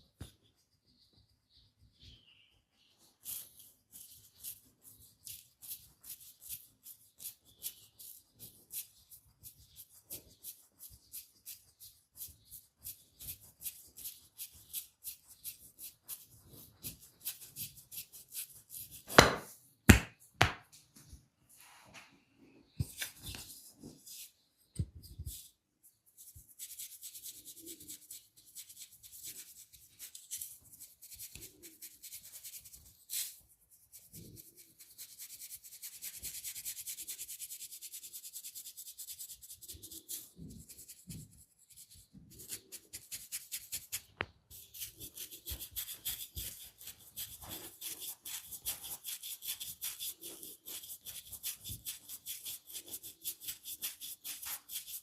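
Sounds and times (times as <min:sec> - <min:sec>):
hands rubbing skin: 0:22.8 - 0:24.3.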